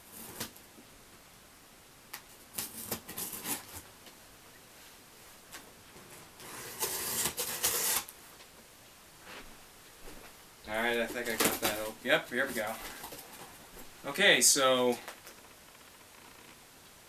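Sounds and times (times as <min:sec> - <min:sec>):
tape and cardboard tearing: 0:02.5 - 0:03.8, 0:06.4 - 0:08.2.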